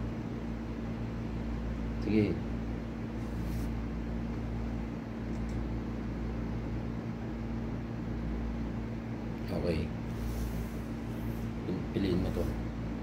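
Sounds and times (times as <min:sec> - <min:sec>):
machine hum: 0:00.0 - 0:13.0
faint light clicks: 0:05.3 - 0:05.6.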